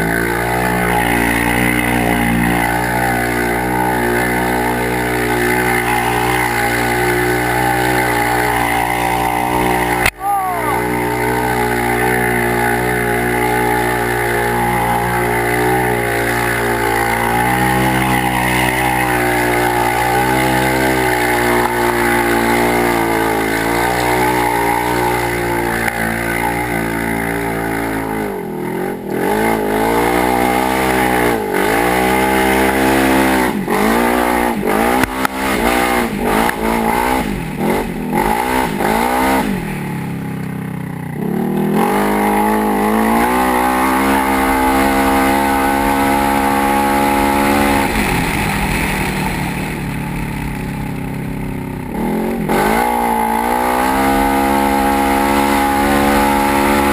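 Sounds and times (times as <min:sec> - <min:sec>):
engine revving: 0:00.0 - 0:56.9.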